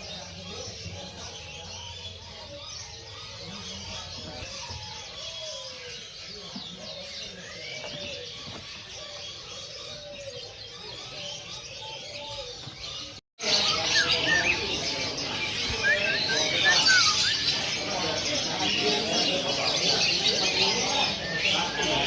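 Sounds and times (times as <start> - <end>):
songbirds chirping and singing: 0.0 - 22.0
voices murmuring: 0.0 - 22.0.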